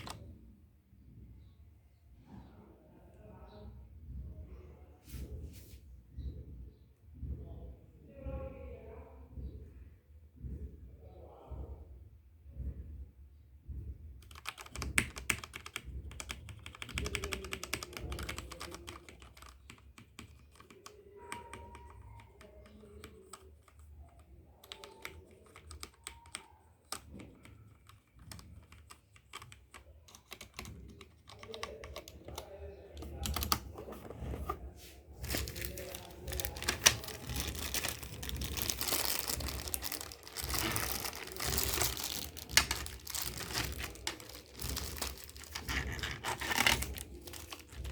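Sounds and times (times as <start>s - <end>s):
mechanical keyboard key clacks: 14.2s - 33.9s, 35.2s - 47.9s.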